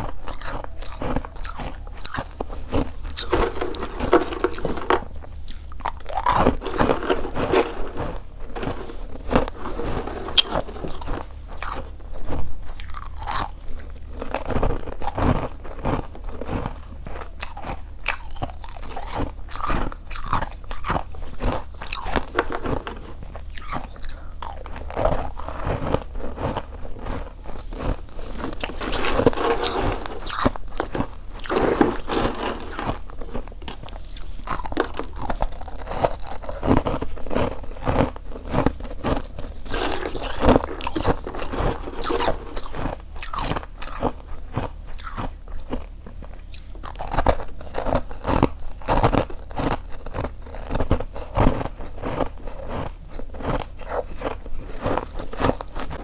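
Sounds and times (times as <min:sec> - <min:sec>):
chewing crunchy frost: 0:00.0 - 0:56.0.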